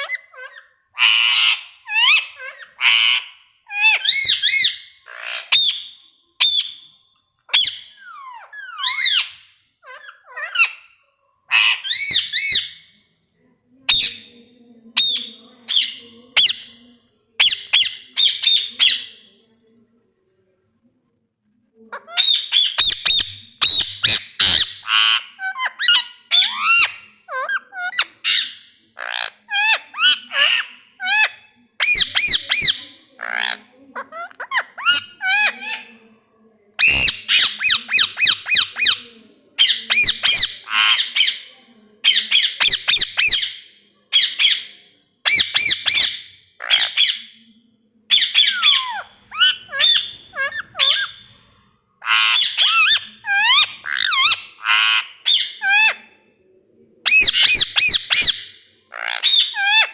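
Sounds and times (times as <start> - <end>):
parrot squawking: 0.0 - 6.9, 7.5 - 10.9, 11.5 - 12.9, 17.4 - 19.2, 21.9 - 36.0, 36.8 - 47.4, 48.1 - 51.4, 52.0 - 56.1, 57.1 - 59.9.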